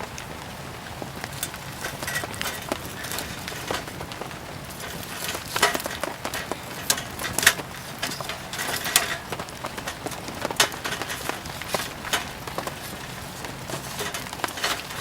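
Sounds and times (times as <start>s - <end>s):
rain hissing: 0.0s - 15.0s
wood fire crackling: 0.0s - 15.0s.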